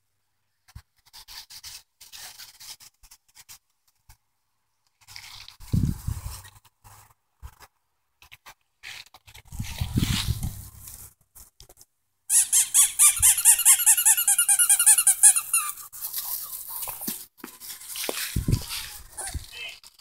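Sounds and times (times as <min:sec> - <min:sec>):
soft scuffling: 0:08.9 - 0:11.5, 0:15.9 - 0:19.8
rapid high squeaking: 0:12.3 - 0:15.8.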